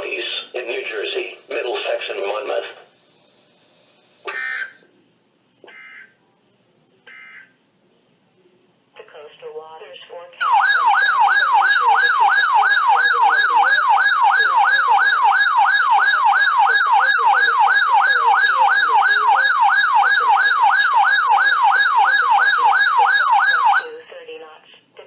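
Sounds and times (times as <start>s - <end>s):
electronic siren yelping: 4.3s - 4.8s, 5.7s - 6.1s, 10.4s - 23.9s.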